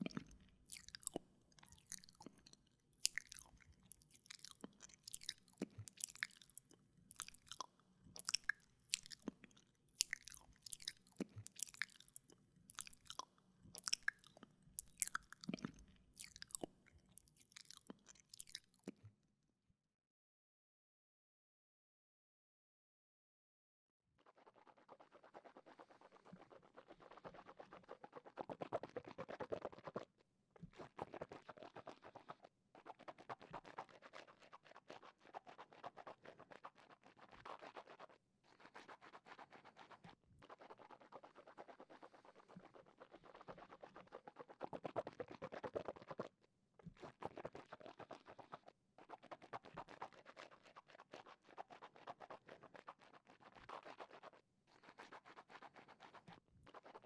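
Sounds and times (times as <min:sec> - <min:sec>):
wet mouth sounds: 0:00.0 - 0:19.1, 0:25.4 - 0:57.0.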